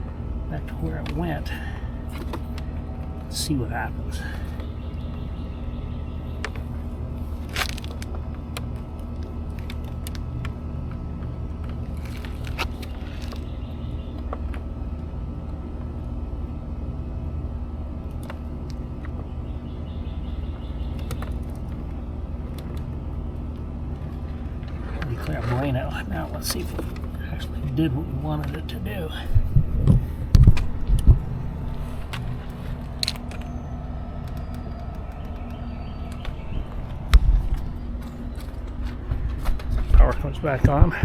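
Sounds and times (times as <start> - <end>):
low mechanical hum: 0.0 - 41.0.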